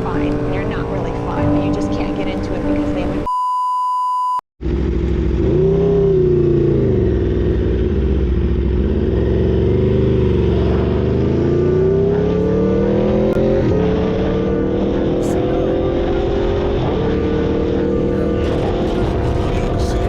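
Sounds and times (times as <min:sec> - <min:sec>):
steady beep: 0:03.2 - 0:04.4
motorcycle engine revving: 0:04.6 - 0:20.0.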